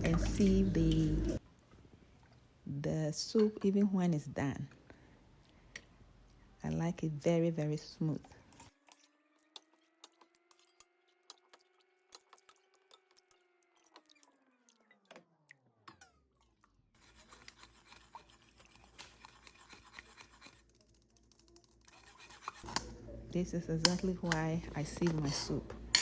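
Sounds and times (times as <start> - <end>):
spoon scraping a sieve: 17.0 - 20.7, 21.9 - 23.0, 23.8 - 26.0.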